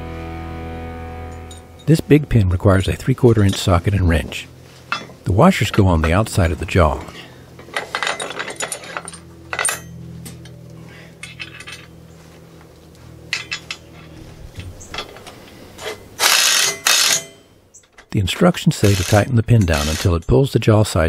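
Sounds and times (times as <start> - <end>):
steel washers and pin clinking: 3.3 - 3.8, 4.9 - 12.2, 13.3 - 18.2.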